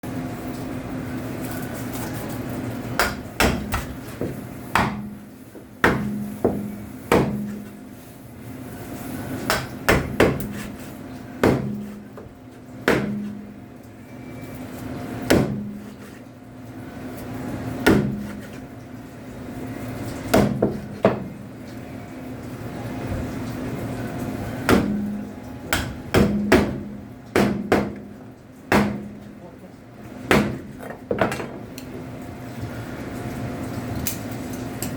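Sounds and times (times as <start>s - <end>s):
knife chopping on cutting board: 3.0s - 5.1s, 5.8s - 7.7s, 9.5s - 12.0s, 12.9s - 13.4s.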